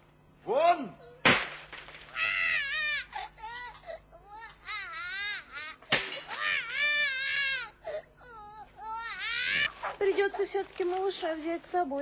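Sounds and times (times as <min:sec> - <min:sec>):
baby crying: 0:02.1 - 0:10.0.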